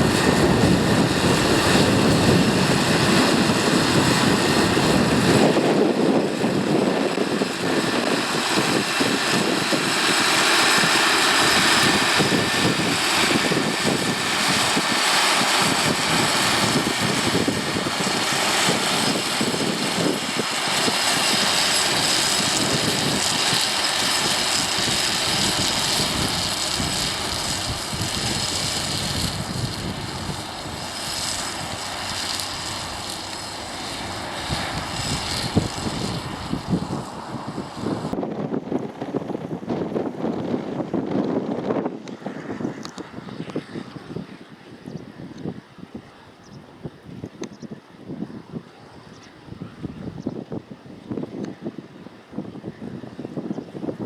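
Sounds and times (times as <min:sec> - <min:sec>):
tractor engine running: 0:00.0 - 0:38.2.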